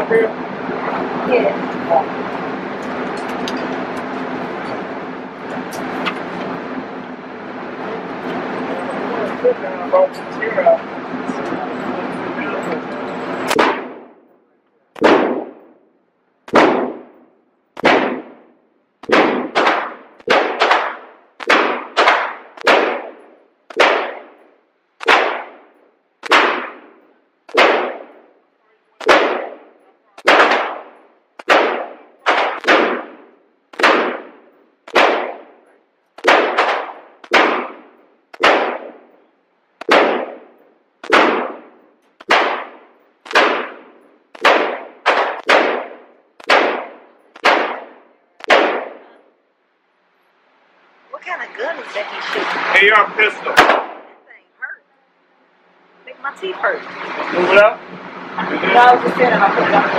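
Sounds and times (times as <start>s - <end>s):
gunshots with echo: 13.4s - 14.3s, 15.0s - 15.8s, 16.5s - 28.4s, 29.0s - 39.2s, 39.8s - 49.2s, 52.5s - 54.1s.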